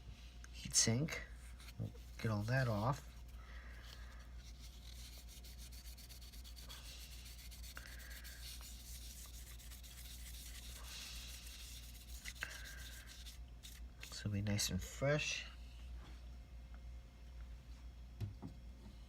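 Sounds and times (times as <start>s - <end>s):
wipe rubbing on metal heatsink: 1.4s - 3.3s, 4.4s - 14.2s.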